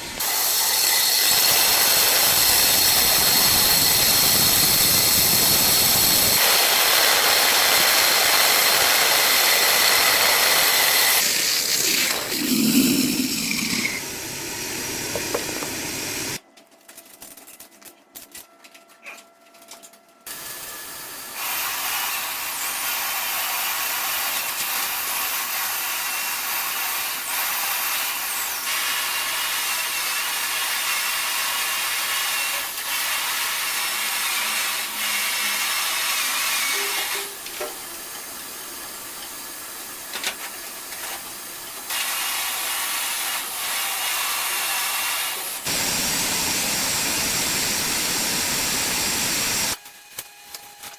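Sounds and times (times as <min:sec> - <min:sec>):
power tool running: 0:00.0 - 0:16.4, 0:41.8 - 0:49.8.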